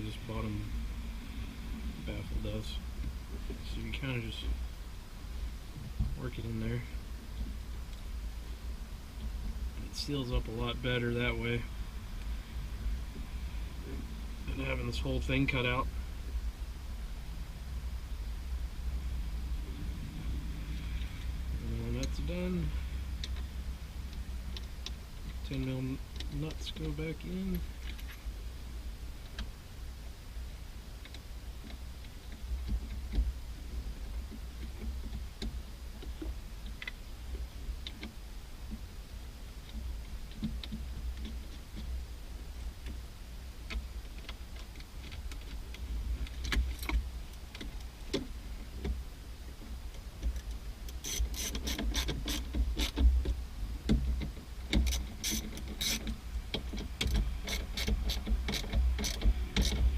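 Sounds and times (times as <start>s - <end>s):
low steady rumble: 0.0s - 59.9s
ratchet clicking: 50.9s - 53.0s, 54.7s - 59.9s.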